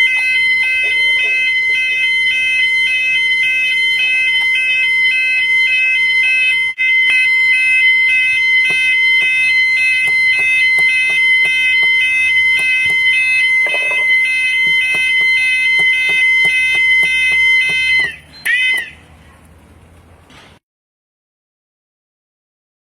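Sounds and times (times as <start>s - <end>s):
fire alarm tones: 0.0s - 19.0s.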